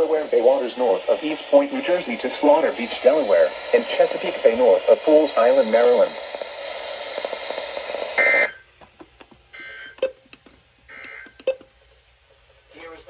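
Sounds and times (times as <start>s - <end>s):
radio hiss: 0.0s - 8.5s, 10.9s - 11.4s
sharp clicks: 10.0s - 11.8s.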